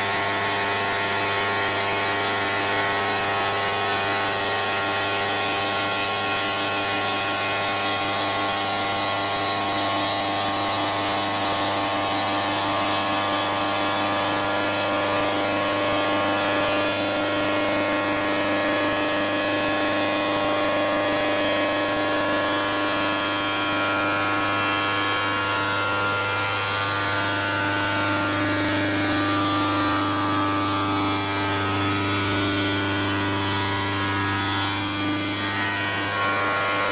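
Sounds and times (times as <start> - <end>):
stone router whining: 0.0 - 36.9.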